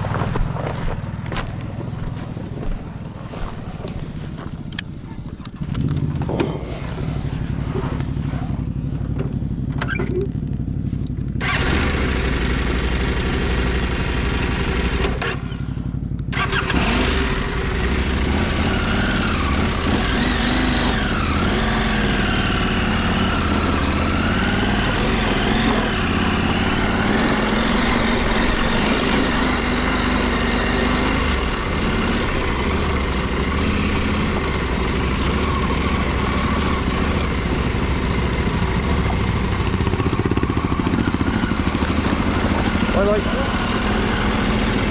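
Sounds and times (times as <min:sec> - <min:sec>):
motorcycle engine running: 0:00.0 - 0:44.9
wavering high whine: 0:38.9 - 0:40.8.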